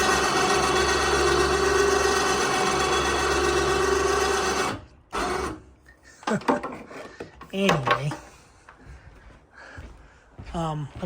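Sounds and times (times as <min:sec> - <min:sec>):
electric winch motor whining: 0:00.0 - 0:05.7.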